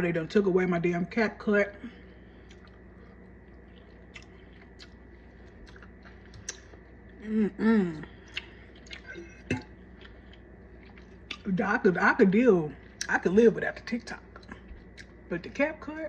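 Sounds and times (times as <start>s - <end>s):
chewing food: 2.0s - 7.3s, 7.9s - 11.6s, 12.7s - 15.3s
wet mouth clicks: 4.0s - 5.0s, 5.7s - 6.8s
person humming: 7.2s - 8.2s.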